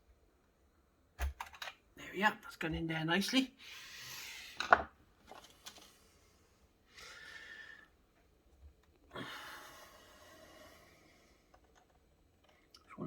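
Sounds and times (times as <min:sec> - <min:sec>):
man breathing out heavily: 0:09.1 - 0:11.4.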